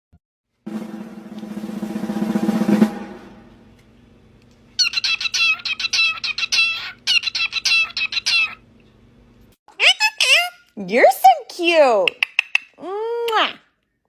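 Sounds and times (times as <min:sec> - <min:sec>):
snare drum roll: 0:00.7 - 0:03.7
bird chirping: 0:04.8 - 0:08.6.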